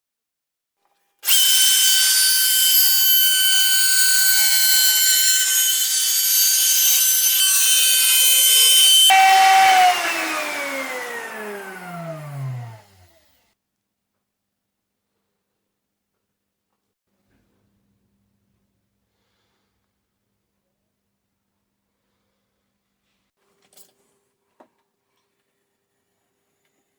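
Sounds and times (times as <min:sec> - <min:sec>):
router motor whining: 0:01.2 - 0:13.5
router spinning down: 0:01.2 - 0:13.5.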